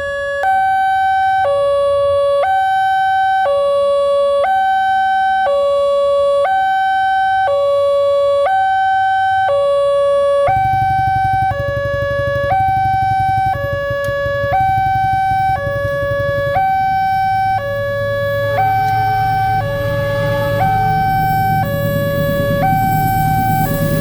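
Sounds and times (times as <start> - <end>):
level-crossing two-tone siren: 0.0 - 24.0
steady low hum: 10.5 - 24.0.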